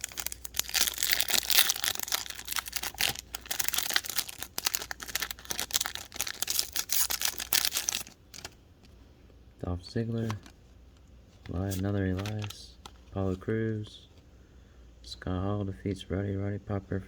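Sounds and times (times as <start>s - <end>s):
foil wrapper tearing and crinkling: 0.0s - 8.6s, 11.6s - 12.6s.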